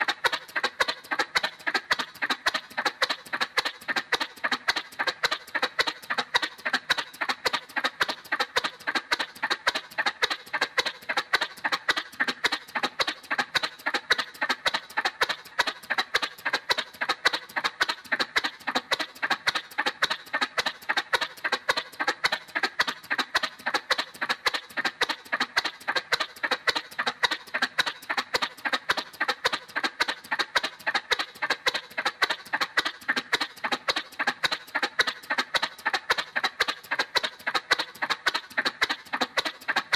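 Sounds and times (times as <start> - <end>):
cartoon motorcycle putt-putt: 0.0 - 39.9.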